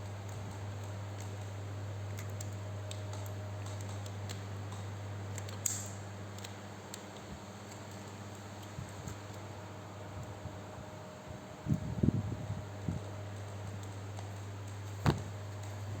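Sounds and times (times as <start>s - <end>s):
steady low hum: 0.0s - 16.0s
light clicks and taps: 0.2s - 9.4s, 13.0s - 15.9s.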